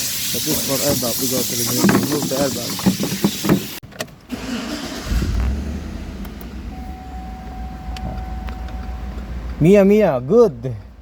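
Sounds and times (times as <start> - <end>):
car engine starting and idling: 3.8 - 10.0.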